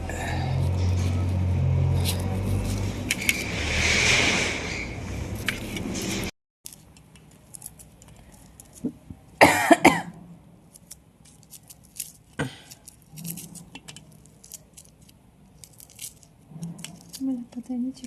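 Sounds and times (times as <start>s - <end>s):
person coughing: 9.4s - 10.1s, 12.4s - 12.7s.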